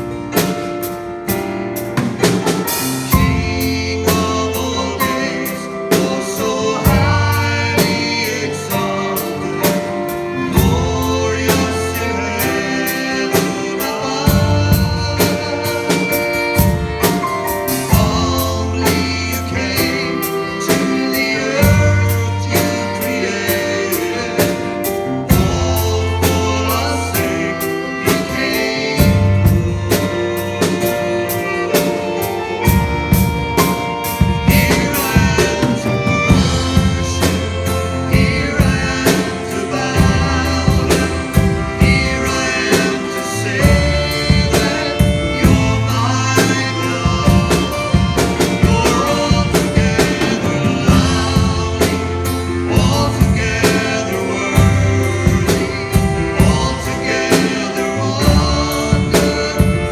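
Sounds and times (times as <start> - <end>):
bass guitar: 0.0 - 59.9
drum kit: 0.0 - 59.9
worship song with singing: 2.0 - 59.9.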